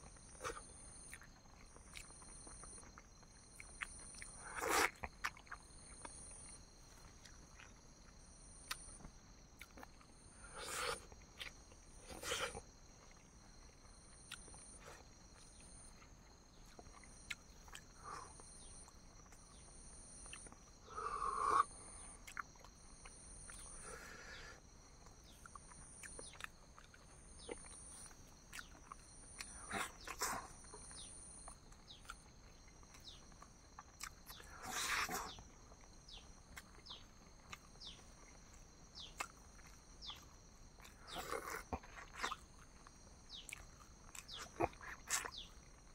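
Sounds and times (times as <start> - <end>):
person chewing: 0.0 - 19.6, 22.0 - 45.9
insects chirping: 0.0 - 45.9.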